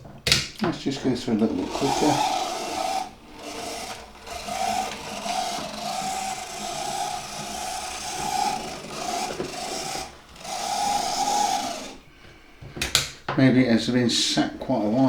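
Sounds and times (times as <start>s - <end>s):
model train motor whining: 0.6s - 13.1s.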